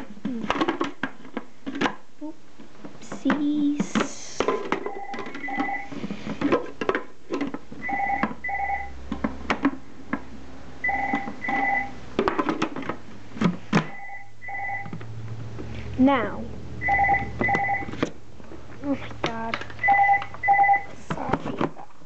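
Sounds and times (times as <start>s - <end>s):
telephone two-tone ringing: 4.9s - 5.9s, 7.8s - 8.9s, 10.8s - 12.0s, 13.9s - 15.0s, 16.8s - 17.9s, 19.8s - 20.9s
knocks and clatter: 11.1s - 14.0s.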